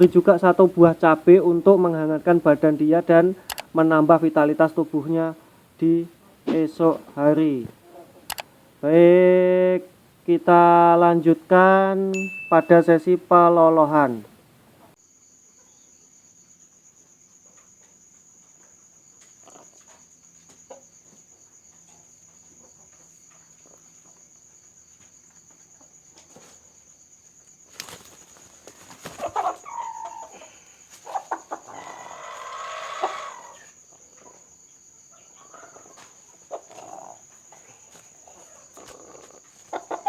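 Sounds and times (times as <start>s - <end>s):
crickets trilling: 0.0s - 14.3s, 14.9s - 40.0s
rooster squawking and clucking: 28.9s - 34.4s, 35.2s - 40.0s.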